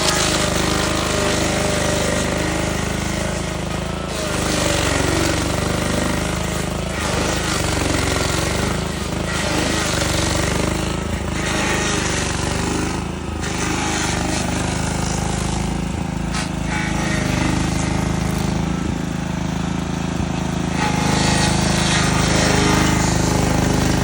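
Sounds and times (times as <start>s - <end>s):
cutter wheel grinding wood: 0.0s - 24.0s
stump grinder engine droning: 0.0s - 24.0s.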